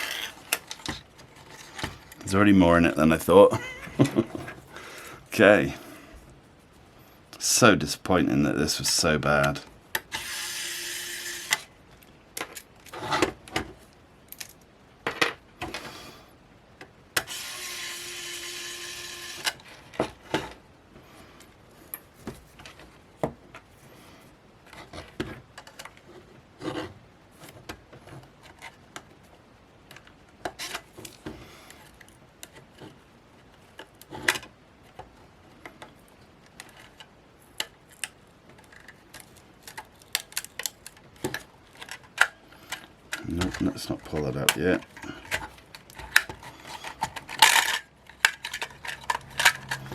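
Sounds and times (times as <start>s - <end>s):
plastic parts clicking and scraping: 0.0s - 2.3s, 24.6s - 29.1s, 29.8s - 49.9s
steady whirring noise: 0.0s - 49.9s.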